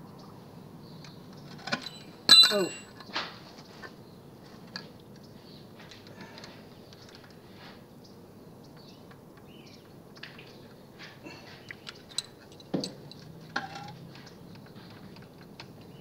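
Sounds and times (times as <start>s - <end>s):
sharp metallic clinks: 1.8s - 3.0s, 11.8s - 14.0s.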